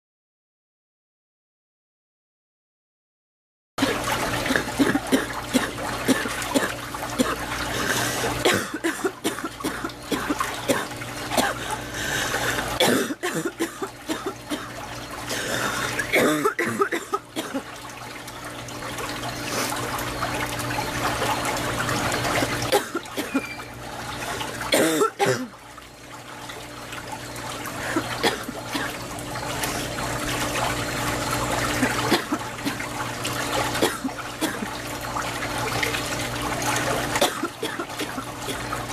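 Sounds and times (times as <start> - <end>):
woman coughing: 3.8 - 7.4, 8.4 - 11.6, 12.8 - 14.7, 16.1 - 17.7, 22.7 - 23.4, 24.7 - 25.5, 27.9 - 29.0, 31.8 - 32.8, 33.8 - 34.7, 37.2 - 38.6
throat clearing: 3.8 - 11.6, 15.4 - 17.6, 27.8 - 29.0
running water: 3.8 - 38.9.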